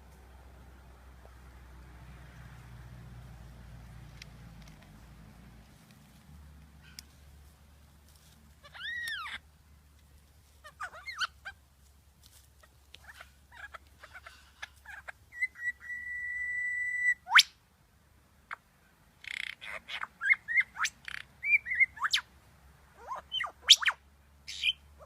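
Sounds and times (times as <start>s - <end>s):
bird whistling and chirping: 14.9s - 17.5s, 19.7s - 22.2s.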